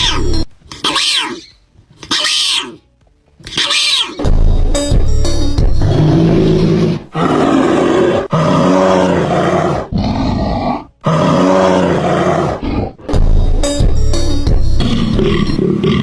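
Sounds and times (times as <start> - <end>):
animal calling low: 0.0 - 2.9, 3.5 - 4.3.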